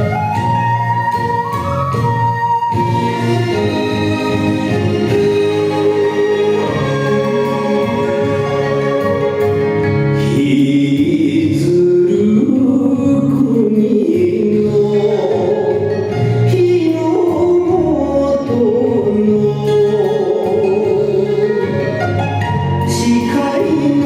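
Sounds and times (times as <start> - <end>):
sustained instrumental accompaniment: 0.0 - 12.4, 18.3 - 24.0
person singing wavering melody: 2.7 - 9.6, 10.2 - 24.0.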